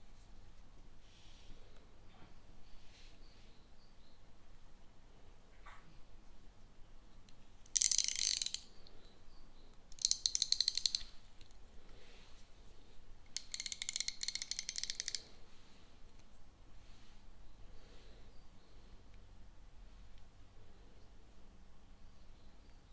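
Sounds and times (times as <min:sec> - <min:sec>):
ratchet wrench clicking rapidly: 0:07.7 - 0:08.7, 0:10.0 - 0:11.1, 0:13.3 - 0:15.3.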